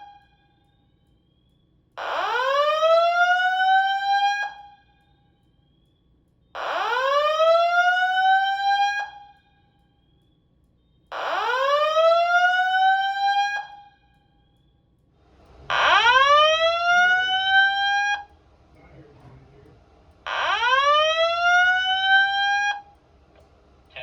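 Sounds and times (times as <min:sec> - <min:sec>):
fire alarm whoop tone: 0:00.0 - 0:15.1, 0:15.7 - 0:18.4, 0:20.2 - 0:23.0.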